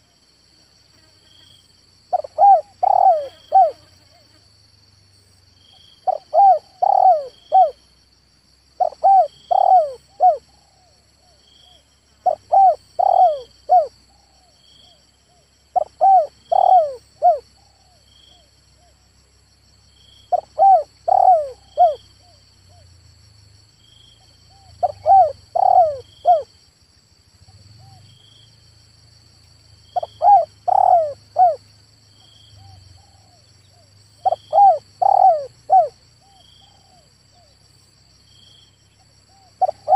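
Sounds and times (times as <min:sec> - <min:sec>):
dove cooing: 0:02.1 - 0:03.8, 0:06.0 - 0:07.8, 0:08.8 - 0:10.9, 0:12.2 - 0:14.5, 0:15.7 - 0:18.5, 0:20.3 - 0:22.8, 0:24.5 - 0:26.5, 0:30.0 - 0:31.6, 0:32.6 - 0:37.6, 0:39.3 - 0:39.9
faint chirps: 0:05.0 - 0:19.0, 0:19.8 - 0:23.0, 0:23.8 - 0:26.5, 0:29.4 - 0:39.9.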